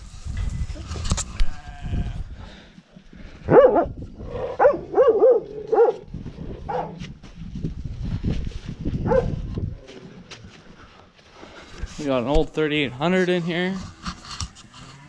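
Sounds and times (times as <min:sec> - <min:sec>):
dog barking: 0:03.5 - 0:06.1, 0:06.7 - 0:07.0, 0:09.0 - 0:09.4.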